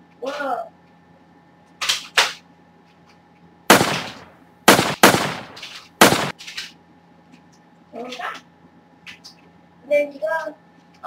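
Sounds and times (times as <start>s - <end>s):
gunshots: 3.7s - 6.4s.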